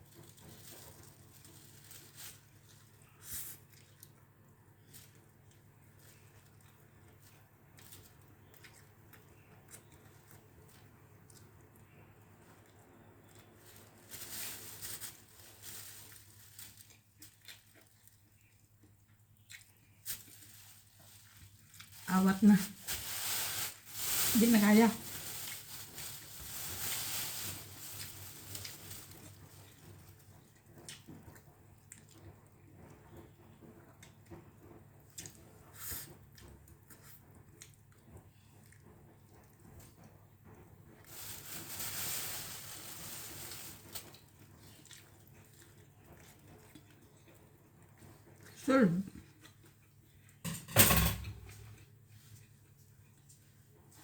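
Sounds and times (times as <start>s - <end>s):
wet chewing noises: 2.4s - 14.1s, 15.8s - 22.3s, 27.9s - 40.7s, 43.5s - 50.4s.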